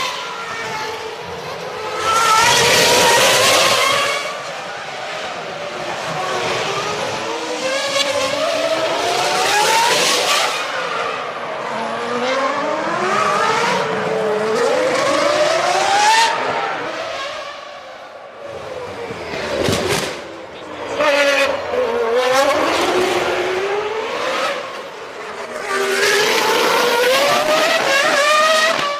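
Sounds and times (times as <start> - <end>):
racing car engines accelerating: 0.0 - 28.9.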